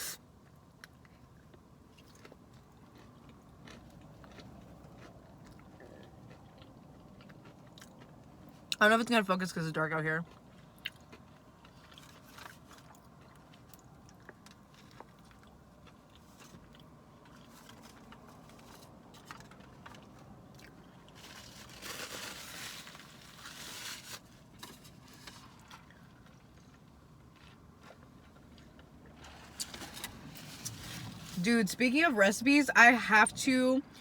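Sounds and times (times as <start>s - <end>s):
person chewing food: 0.1s - 8.8s, 10.2s - 21.6s, 25.2s - 30.0s.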